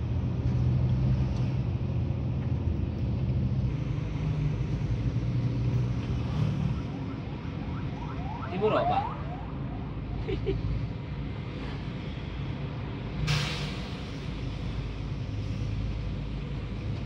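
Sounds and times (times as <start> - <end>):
bus diesel engine running: 8.6 - 17.0.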